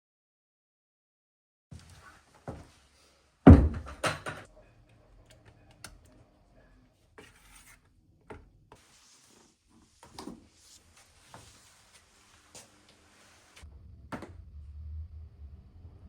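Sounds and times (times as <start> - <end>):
hard objects knocking and clattering: 3.5 - 4.5.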